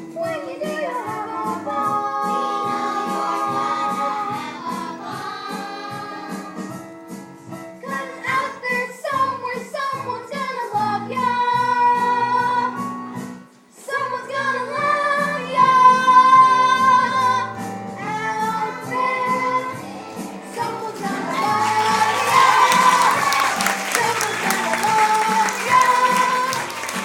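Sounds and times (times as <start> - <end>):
ensemble singing with instruments: 0.3 - 9.7, 13.5 - 27.0.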